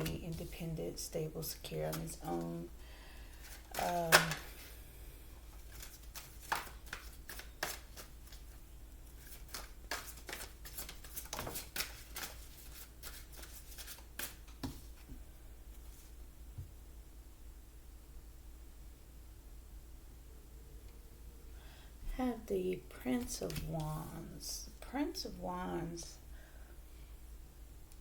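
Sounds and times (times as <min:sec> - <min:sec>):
cards being shuffled: 0:01.8 - 0:02.6, 0:03.3 - 0:04.7, 0:05.5 - 0:15.1, 0:23.2 - 0:24.1.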